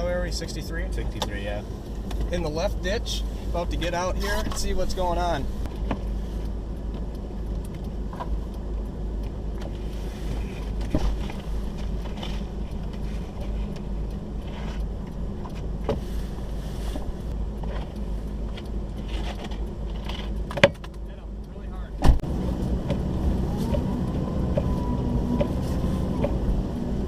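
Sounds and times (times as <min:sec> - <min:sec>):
car engine rumbling: 0:00.0 - 0:27.0
small clicks and knocks: 0:17.6 - 0:21.2.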